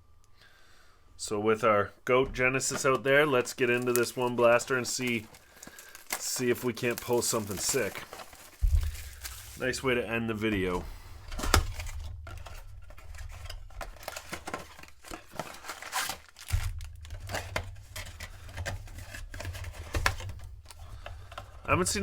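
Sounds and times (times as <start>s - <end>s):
foil packs crinkling: 2.6s - 22.0s
plastic shrink-wrap tearing: 3.3s - 10.0s, 11.3s - 20.8s.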